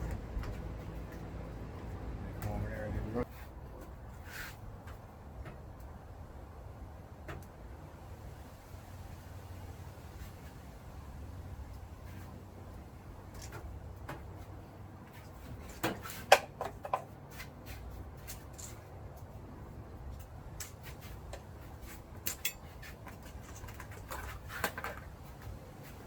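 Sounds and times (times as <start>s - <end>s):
low steady hum: 0.0s - 3.3s.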